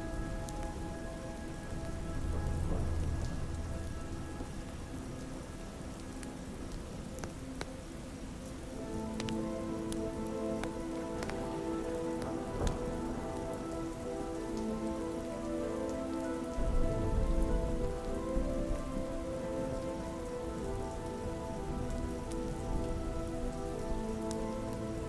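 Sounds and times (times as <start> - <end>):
ambient synth chords: 0.0 - 25.0
raindrop clicks: 0.0 - 25.0
soft rain: 0.0 - 25.0
low rumble: 1.2 - 5.7.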